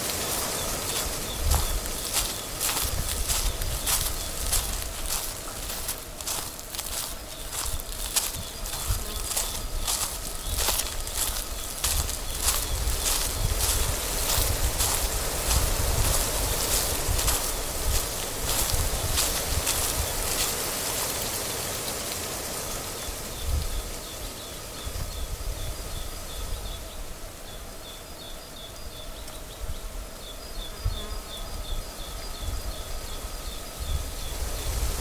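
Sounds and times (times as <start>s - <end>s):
wind gusting on microphone: 0.0s - 21.4s, 23.0s - 27.2s, 30.7s - 35.0s
steady outdoor hiss: 0.0s - 35.0s.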